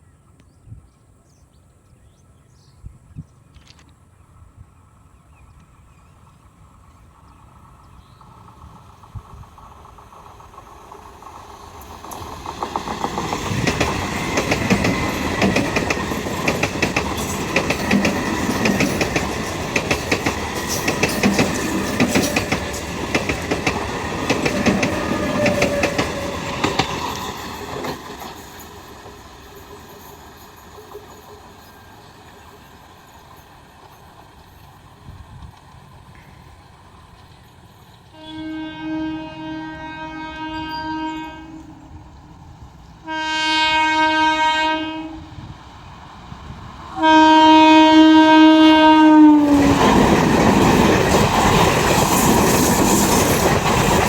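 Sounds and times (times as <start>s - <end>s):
train wheels clattering: 8.0s - 38.2s, 49.5s - 54.0s.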